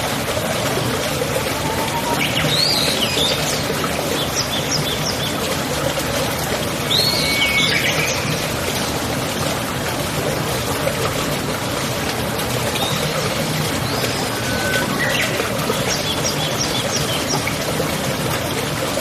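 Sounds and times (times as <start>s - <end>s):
running water: 0.0s - 19.0s
birds chirping: 1.1s - 5.5s, 12.8s - 17.7s.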